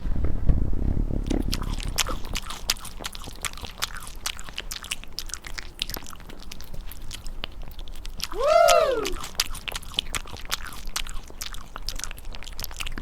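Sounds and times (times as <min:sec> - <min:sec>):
cat lapping water: 0:01.3 - 0:13.0.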